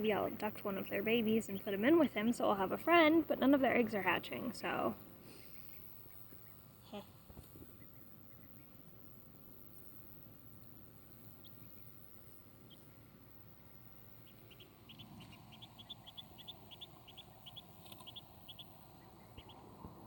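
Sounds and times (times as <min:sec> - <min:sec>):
duckling peeping: 0:11.4 - 0:12.0, 0:14.1 - 0:19.9.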